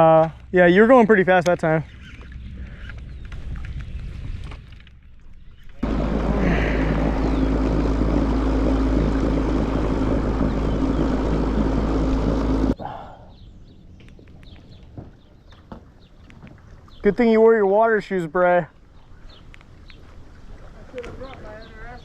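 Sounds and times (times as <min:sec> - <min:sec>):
electric motor humming: 0:05.8 - 0:12.8.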